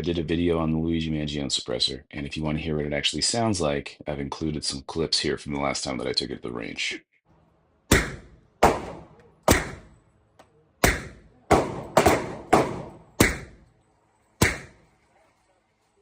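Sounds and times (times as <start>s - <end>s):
suppressed pistol shots: 10.8s - 13.6s, 14.4s - 14.8s.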